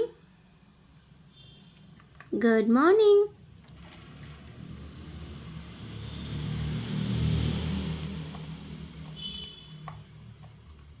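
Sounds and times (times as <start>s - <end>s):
vehicle passing by: 3.5s - 10.9s.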